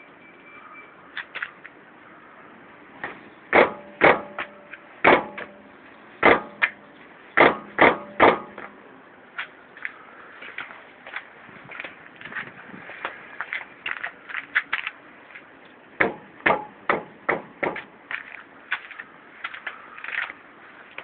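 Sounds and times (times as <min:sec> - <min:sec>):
brake pads knocking: 0:09.4 - 0:21.0.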